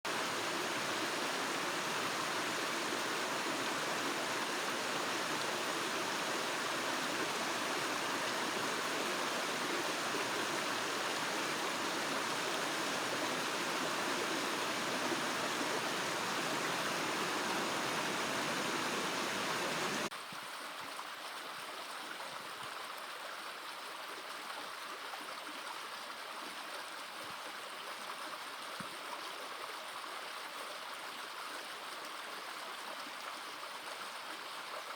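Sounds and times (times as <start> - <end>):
creek water rushing over waterfalls: 0.1 - 20.1.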